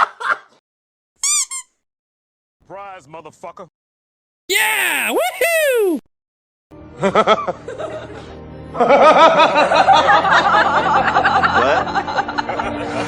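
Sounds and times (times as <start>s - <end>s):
music: 6.7s - 13.0s
laughter sound effect: 7.0s - 13.0s.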